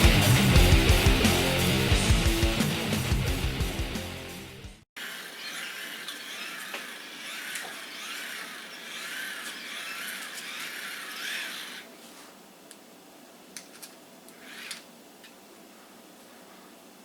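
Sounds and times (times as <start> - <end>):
hand-crank dynamo whirring: 5.0 - 11.9, 14.3 - 14.9.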